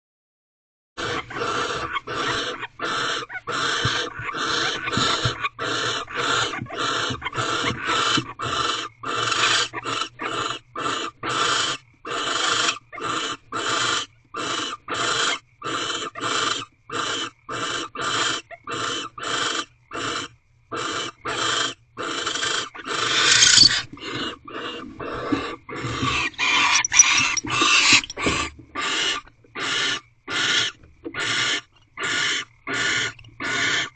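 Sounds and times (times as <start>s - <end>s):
barn owls hissing: 1.0s - 33.9s.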